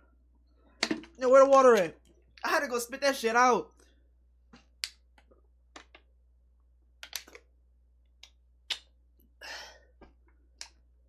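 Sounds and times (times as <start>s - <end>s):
small objects clicking and tapping: 4.5s - 6.1s, 7.0s - 7.5s, 8.2s - 8.9s.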